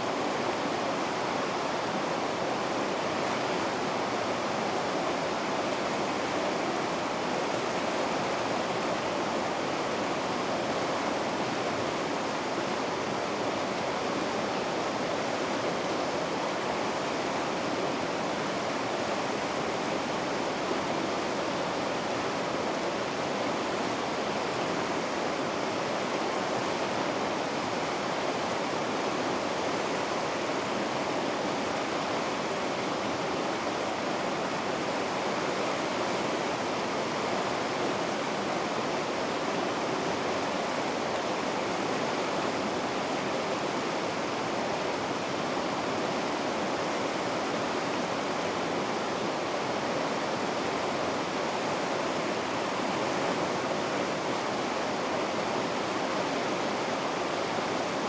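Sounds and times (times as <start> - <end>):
river rapids rushing over rocks: 0.0 - 58.0.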